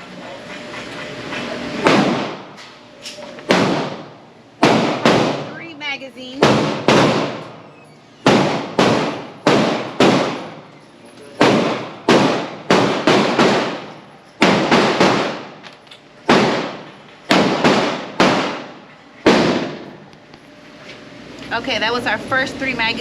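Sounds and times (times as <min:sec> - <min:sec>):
pistol shots with echo: 0:03.5 - 0:05.6, 0:08.2 - 0:10.6, 0:11.4 - 0:15.6, 0:16.3 - 0:19.9.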